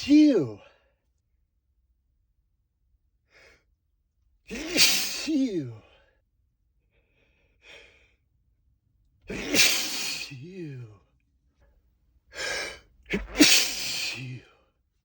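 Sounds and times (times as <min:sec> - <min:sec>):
man sneezing: 0:00.0 - 0:00.7, 0:04.5 - 0:06.0, 0:09.3 - 0:11.0, 0:12.4 - 0:14.6
faint breath in: 0:06.9 - 0:08.2.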